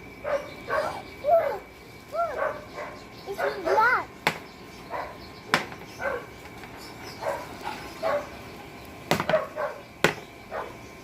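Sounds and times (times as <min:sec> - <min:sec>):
dog barking: 0:00.2 - 0:01.6, 0:02.2 - 0:04.0, 0:04.9 - 0:05.2, 0:06.0 - 0:06.3, 0:07.2 - 0:08.3, 0:09.2 - 0:09.9, 0:10.5 - 0:10.8.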